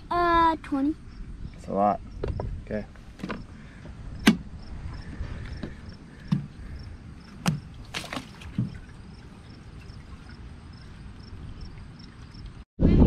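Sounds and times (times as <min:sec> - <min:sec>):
knocks and thumps on wood: 0:05.6 - 0:06.5.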